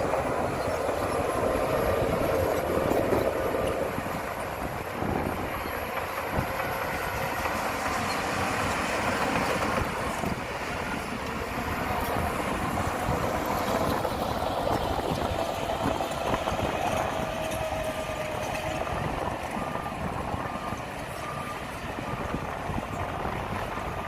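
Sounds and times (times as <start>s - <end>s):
heavy machinery diesel engine under load: 0.0s - 24.0s
reversing alarm beeps: 18.8s - 23.6s.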